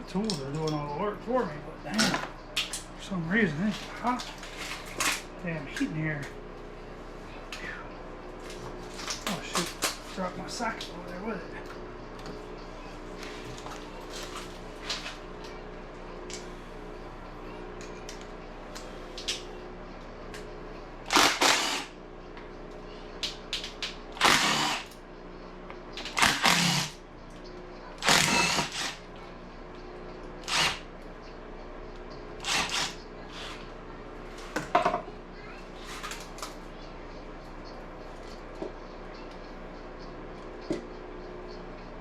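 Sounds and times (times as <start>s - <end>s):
cordless power tool bursts: 21.1s - 21.9s, 24.2s - 24.9s, 26.1s - 27.0s, 28.0s - 29.0s, 30.4s - 30.8s, 32.4s - 33.0s.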